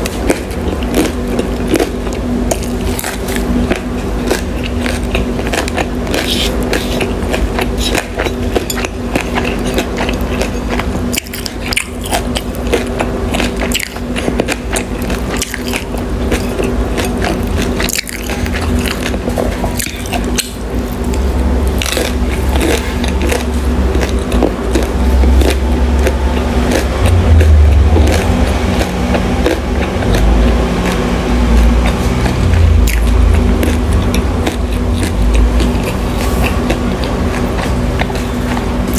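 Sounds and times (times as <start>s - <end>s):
chewing crunchy food: 0.0s - 38.9s
steady low hum: 0.0s - 38.9s
low rumble: 20.6s - 38.9s.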